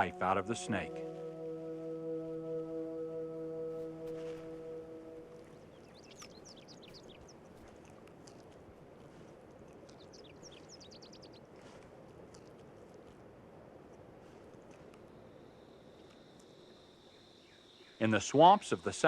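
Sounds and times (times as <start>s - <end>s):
held musical chord: 0.0s - 5.8s
songbird twittering: 4.0s - 8.6s, 9.6s - 12.5s, 15.0s - 19.0s.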